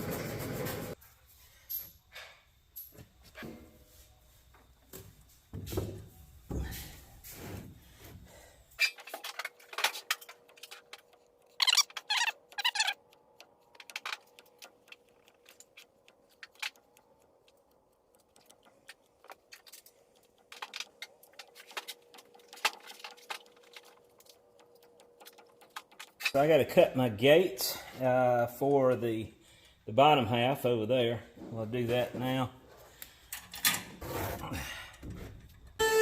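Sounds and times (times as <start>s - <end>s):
hand tools tapping and scraping sand: 0.0s - 26.8s.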